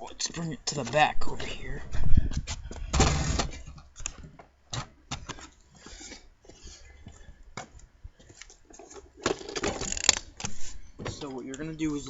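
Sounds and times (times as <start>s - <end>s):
clatter of objects handled: 8.4s - 11.6s.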